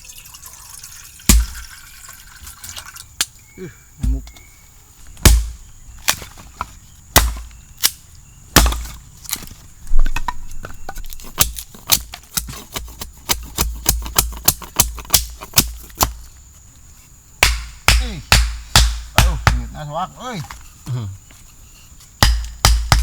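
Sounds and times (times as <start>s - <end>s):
sharp chopping strikes: 5.2s - 6.2s, 7.2s - 9.0s, 17.4s - 19.8s, 22.2s - 23.0s.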